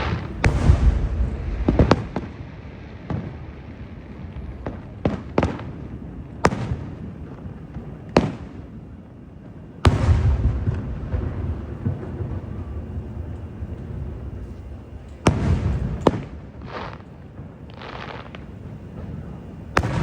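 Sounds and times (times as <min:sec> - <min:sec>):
fireworks bangs with echo: 0:00.0 - 0:08.9, 0:09.8 - 0:20.0.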